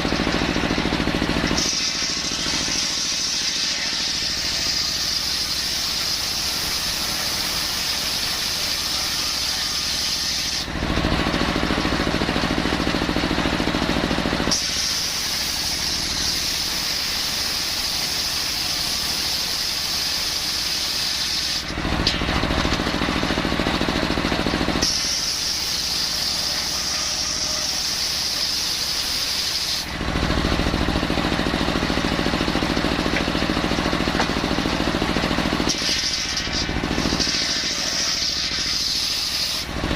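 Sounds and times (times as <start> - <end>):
circular saw cutting wood: 0.0 - 39.9.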